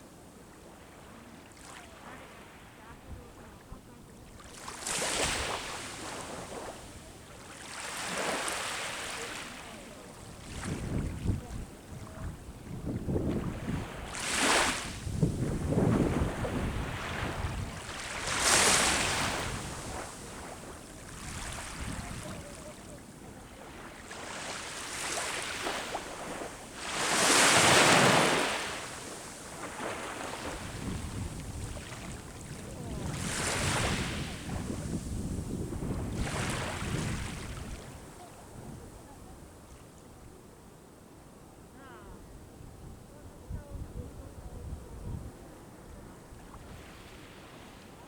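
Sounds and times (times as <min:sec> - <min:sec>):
sea waves breaking on shore: 0:00.7 - 0:38.6, 0:46.4 - 0:48.0
wind rumble on microphone: 0:10.2 - 0:22.8, 0:30.3 - 0:39.7, 0:42.1 - 0:47.1.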